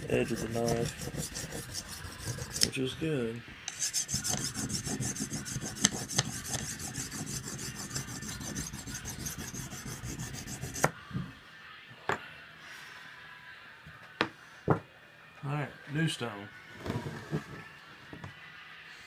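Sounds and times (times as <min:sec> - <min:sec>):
knife scraping on sharpening stone: 0:00.0 - 0:02.7, 0:03.7 - 0:10.8.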